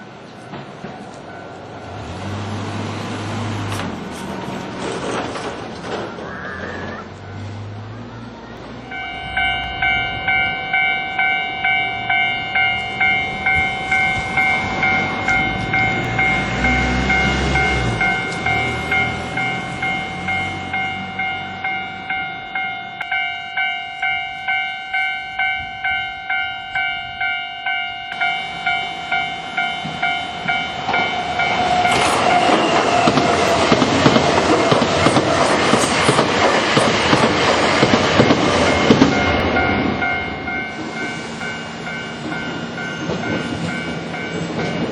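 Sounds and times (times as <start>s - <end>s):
electric train passing: 0.0s - 44.9s
level crossing bell ringing: 8.8s - 32.6s, 38.6s - 44.8s.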